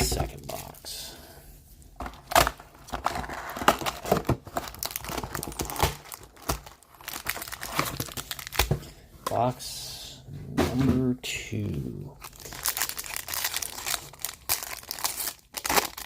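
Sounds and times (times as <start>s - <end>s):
plastic wrapping crinkling and tearing: 2.1s - 8.8s, 12.2s - 16.0s.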